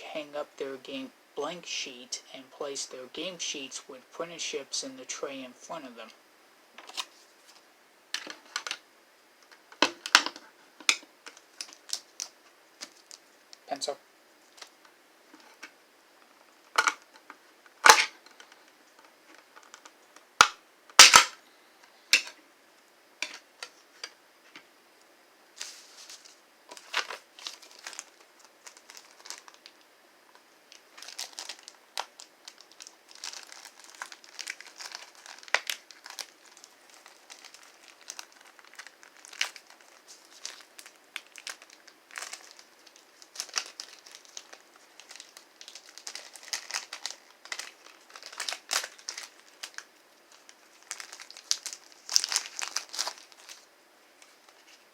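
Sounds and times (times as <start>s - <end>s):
plastic wrapping crinkling: 9.4s - 13.6s, 25.6s - 54.9s.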